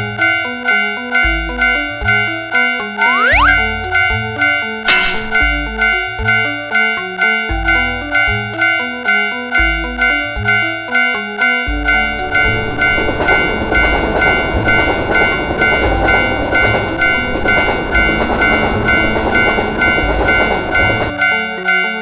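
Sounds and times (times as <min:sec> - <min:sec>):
train passing with low thuds: 0:12.0 - 0:21.2.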